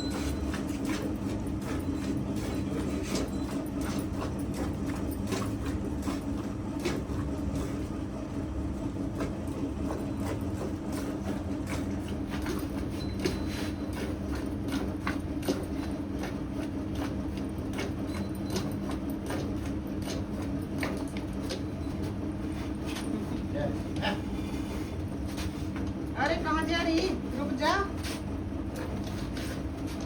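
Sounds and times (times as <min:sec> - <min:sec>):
milking clicks and squirts: 0:00.0 - 0:08.0, 0:09.1 - 0:24.0
steady low hum: 0:00.0 - 0:30.0.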